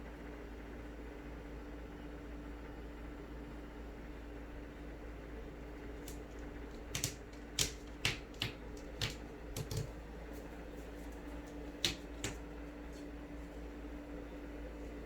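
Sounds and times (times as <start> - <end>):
steady low hum: 0.0 - 15.0
light clicks and taps: 6.0 - 13.1.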